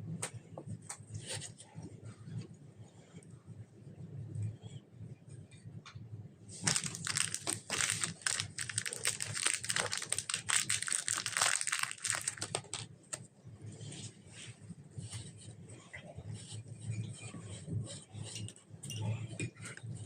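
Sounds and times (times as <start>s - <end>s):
slime squishing and popping: 6.6s - 13.1s.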